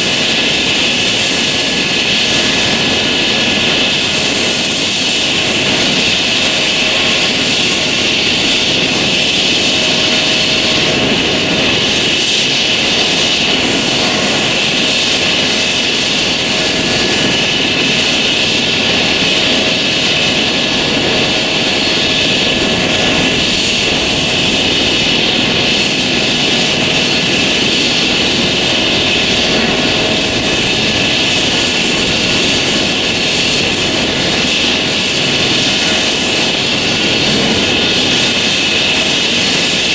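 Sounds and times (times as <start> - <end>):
helicopter engines and rotor rushing: 0.0 - 39.9
helicopter turbine whine: 0.0 - 39.9.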